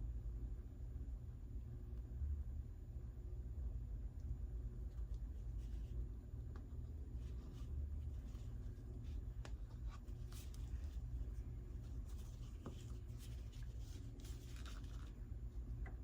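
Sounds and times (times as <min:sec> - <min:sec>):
low steady hum: 0:00.0 - 0:16.0
light scratching and scraping: 0:05.0 - 0:15.4.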